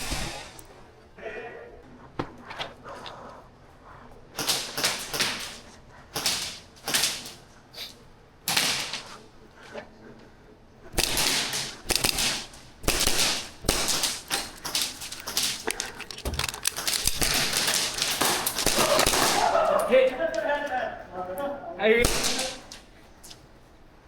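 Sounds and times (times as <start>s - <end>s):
airsoft guns firing bursts: 4.4s - 7.4s, 11.0s - 19.7s, 22.0s - 22.8s.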